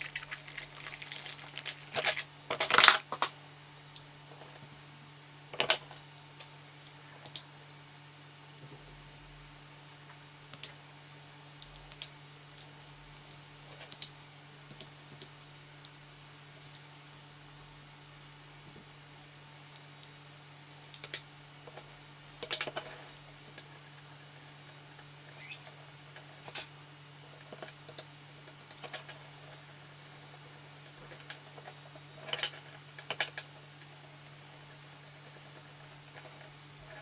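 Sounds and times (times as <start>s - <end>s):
small hard objects clicking: 0.0s - 4.1s
steady low hum: 0.0s - 37.0s.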